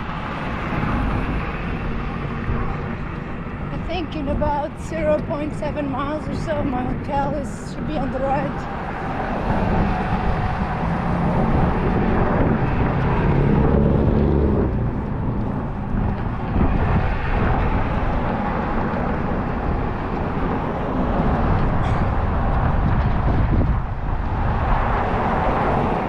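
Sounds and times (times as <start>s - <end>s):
road traffic passing: 0.0s - 26.0s
wind buffeting microphone: 0.0s - 26.0s
vehicle engine passing: 6.9s - 26.0s.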